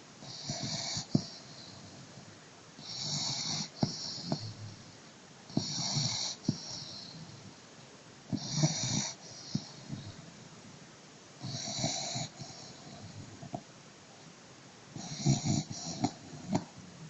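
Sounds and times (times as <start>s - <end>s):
dog snoring loudly: 0.2s - 2.1s, 2.8s - 4.8s, 5.5s - 7.4s, 8.3s - 10.2s, 11.4s - 13.6s, 14.9s - 16.8s.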